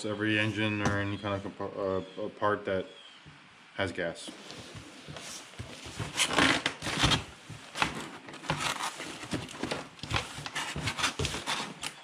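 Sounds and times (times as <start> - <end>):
packaging rustling and clicking: 5.2 - 12.0.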